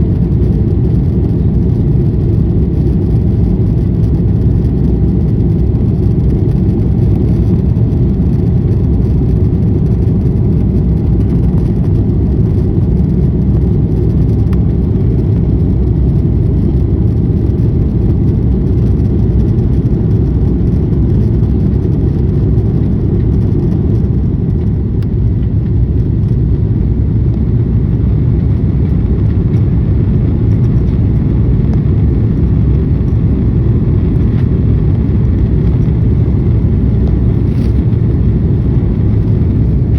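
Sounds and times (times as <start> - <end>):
jet engines rumbling in cabin: 0.0 - 39.9
rushing air: 26.6 - 39.9.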